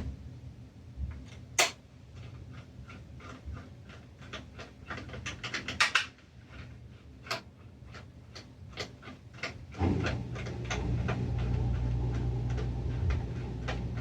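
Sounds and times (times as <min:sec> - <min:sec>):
low steady hum: 0:09.3 - 0:14.0.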